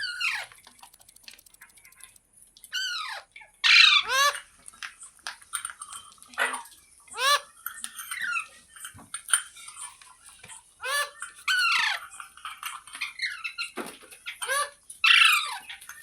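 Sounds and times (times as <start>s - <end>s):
parrot screeching calls: 2.7s - 4.4s.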